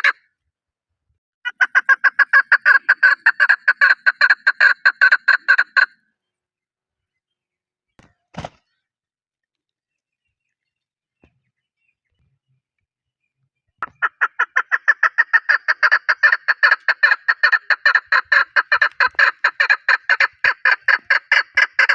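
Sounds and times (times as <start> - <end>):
partridge calling rapid short notes: 1.5 - 5.9, 13.8 - 21.9.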